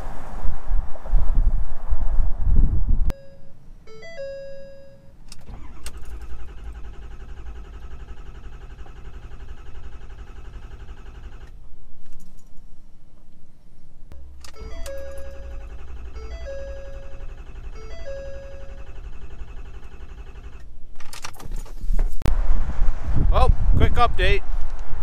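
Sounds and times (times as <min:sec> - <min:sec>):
dashboard chimes: 0:03.1 - 0:05.2, 0:14.2 - 0:18.9
diesel engine cranking and idling: 0:05.2 - 0:11.6, 0:14.1 - 0:21.8.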